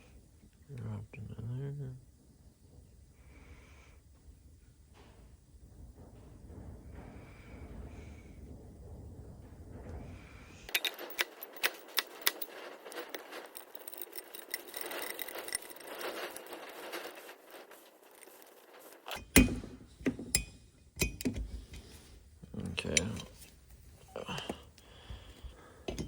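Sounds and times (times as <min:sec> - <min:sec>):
heavier knocks: 0:04.8 - 0:10.7
metal parts clinking and rattling: 0:10.7 - 0:19.6.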